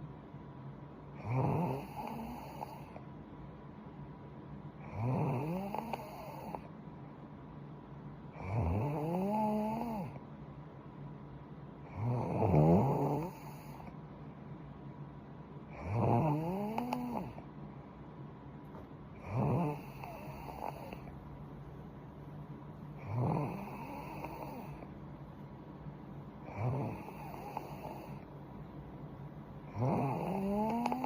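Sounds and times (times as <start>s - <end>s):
woman snoring: 1.2s - 3.0s, 4.8s - 6.7s, 8.4s - 10.2s, 11.9s - 13.9s, 15.7s - 17.4s, 19.2s - 21.1s, 23.0s - 24.8s, 26.4s - 28.3s, 29.7s - 31.0s.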